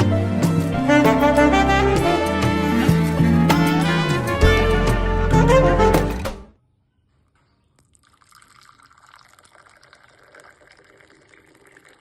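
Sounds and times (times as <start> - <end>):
faint liquid pouring: 7.7 - 12.0.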